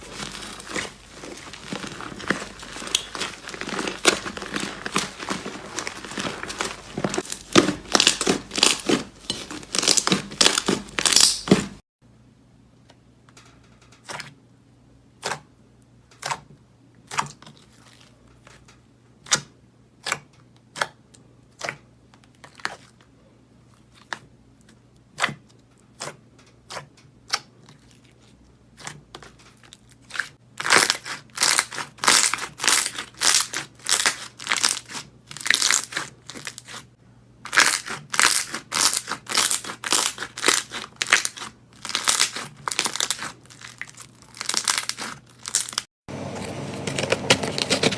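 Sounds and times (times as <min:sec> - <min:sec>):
slime crackling and crinkling: 0:00.0 - 0:11.8, 0:23.7 - 0:47.9.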